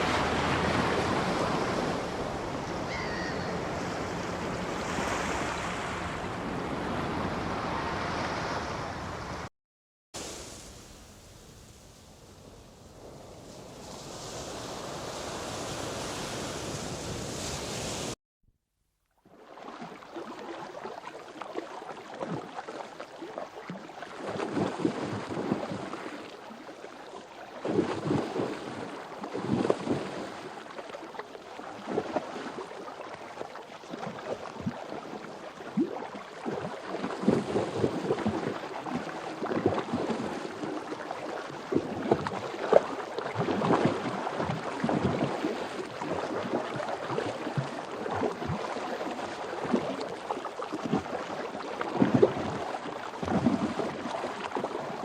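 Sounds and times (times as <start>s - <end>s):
water lapping: 0.0s - 8.4s, 19.3s - 55.0s
surf rushing: 0.0s - 9.5s, 10.2s - 18.2s.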